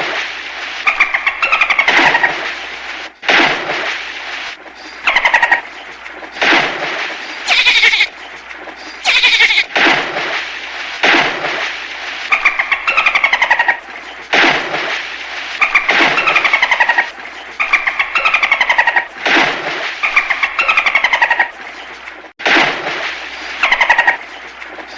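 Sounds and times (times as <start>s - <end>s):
dolphins chattering and squealing: 0.8s - 2.4s, 4.9s - 5.7s, 7.4s - 8.1s, 9.0s - 9.7s, 12.3s - 13.9s, 15.6s - 19.2s, 20.0s - 21.6s.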